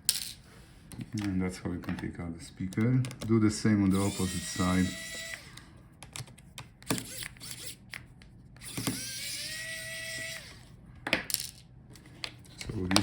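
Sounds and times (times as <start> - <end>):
electric screwdriver motor whine: 3.9 - 5.6, 6.8 - 7.8, 8.6 - 10.7.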